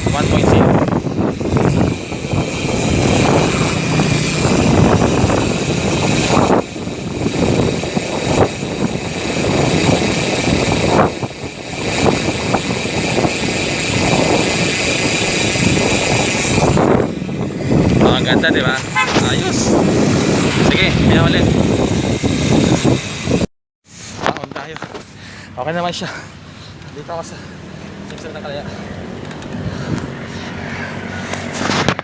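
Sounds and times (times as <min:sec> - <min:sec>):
wind on microphone: 0:00.0 - 0:23.5
bicycle hub buzzing: 0:00.0 - 0:24.2, 0:24.9 - 0:31.9
road noise: 0:00.0 - 0:32.0.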